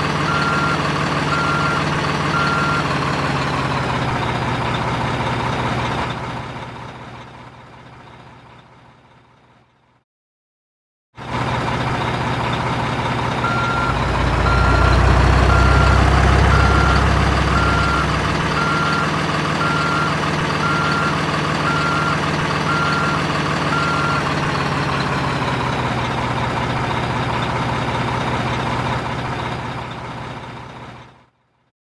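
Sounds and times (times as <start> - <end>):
diesel truck engine running: 0.0 - 8.4, 11.2 - 31.0
reversing beeper: 0.3 - 2.9, 13.4 - 24.3.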